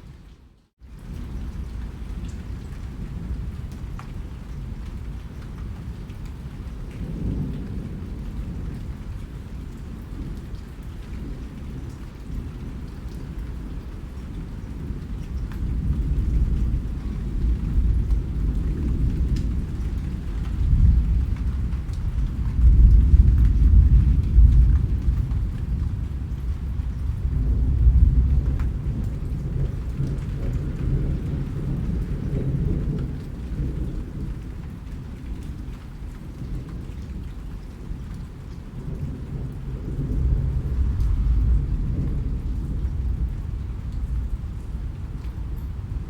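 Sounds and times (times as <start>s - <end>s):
raindrops pattering: 0.0s - 46.0s
steady rain: 0.0s - 46.0s
rolling thunder: 14.6s - 46.0s.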